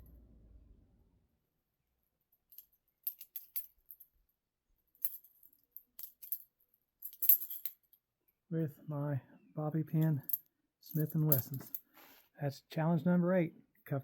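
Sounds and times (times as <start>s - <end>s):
handcuffs clinking and jingling: 2.4s - 8.0s, 9.9s - 11.9s.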